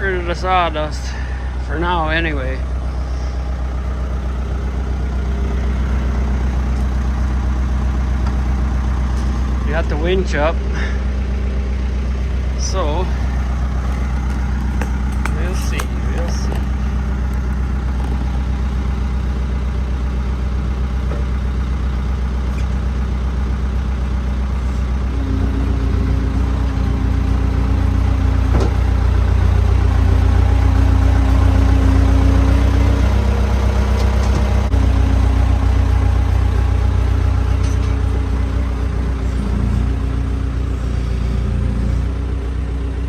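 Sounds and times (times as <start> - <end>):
engine running: 0.0 - 43.0
higher steady hum: 24.5 - 43.0.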